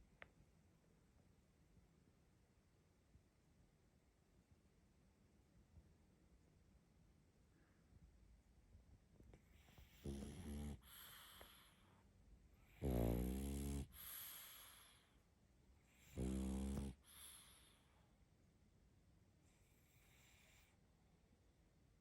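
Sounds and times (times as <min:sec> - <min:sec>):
dog snoring: 0:09.4 - 0:11.8, 0:12.6 - 0:15.0, 0:15.9 - 0:17.8, 0:19.7 - 0:20.7
soft breathy exhale: 0:10.8 - 0:12.0.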